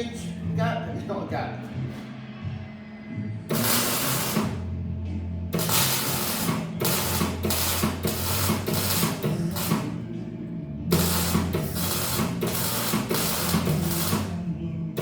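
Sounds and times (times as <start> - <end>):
background music with steady beat: 0.0 - 15.0
welding arc crackling: 3.5 - 4.7, 5.6 - 10.1, 10.9 - 15.0.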